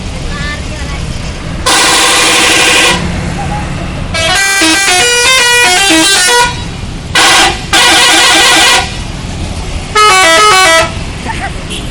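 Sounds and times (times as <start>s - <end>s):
multi-tone musical bus horn: 1.6s - 3.2s, 4.1s - 9.0s, 9.9s - 11.0s.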